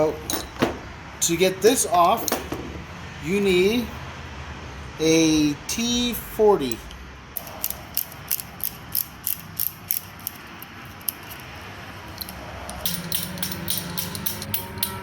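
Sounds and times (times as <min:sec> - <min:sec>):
socket ratchet clicking: 0:06.7 - 0:15.0.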